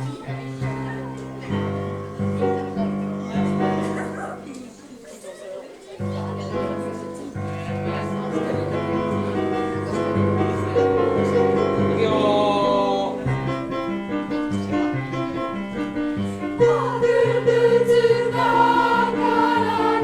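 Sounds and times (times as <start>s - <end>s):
keyboard accompaniment: 0.0s - 4.7s, 6.0s - 20.0s
choir singing: 7.5s - 13.5s, 16.5s - 20.0s.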